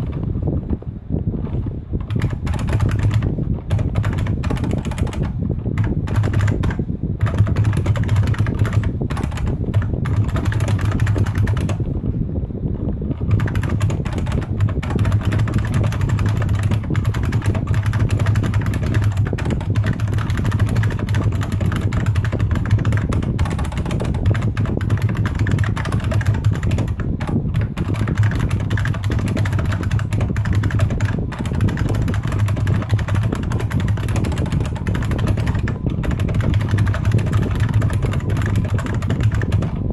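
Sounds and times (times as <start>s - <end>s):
fast typing on keyboard: 0.0s - 0.3s, 1.4s - 12.0s, 13.1s - 39.9s.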